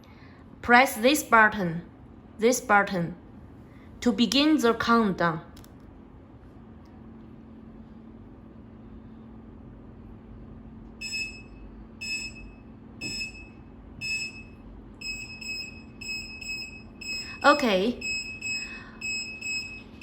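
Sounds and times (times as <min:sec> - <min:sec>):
steady low hum: 0:00.0 - 0:20.0
clock buzzer beeping: 0:11.0 - 0:20.0.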